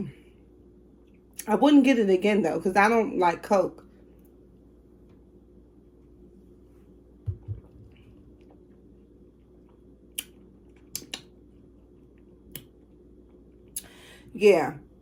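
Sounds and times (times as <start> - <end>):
soft low thuds: 7.2 - 8.0
lip smacks: 9.7 - 14.0.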